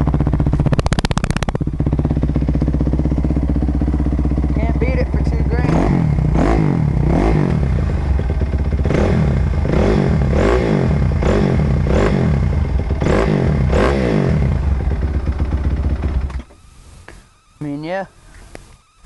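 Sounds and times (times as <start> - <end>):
motorcycle engine revving: 0.0 - 17.9.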